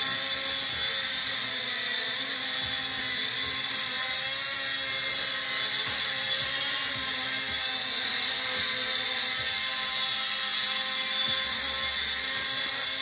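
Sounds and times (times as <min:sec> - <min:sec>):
drone propellers whirring: 0:00.0 - 0:13.0.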